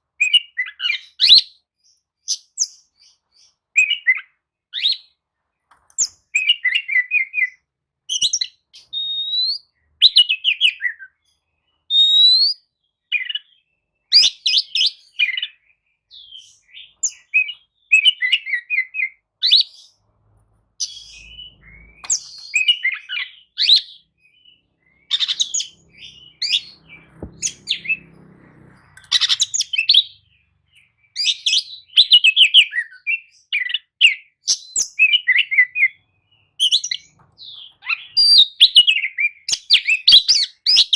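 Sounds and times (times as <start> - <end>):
songbird chirping and trilling: 0.2 - 40.9
rising bird whistles: 8.2 - 11.1, 11.9 - 12.6, 20.8 - 30.2.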